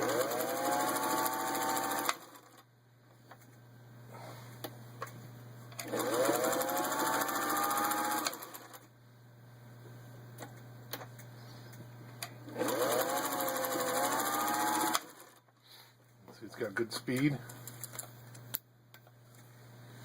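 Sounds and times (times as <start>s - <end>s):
sewing machine stitching: 0.0s - 2.6s, 5.8s - 8.8s, 12.5s - 15.4s
steady low hum: 2.6s - 7.6s, 8.4s - 14.0s.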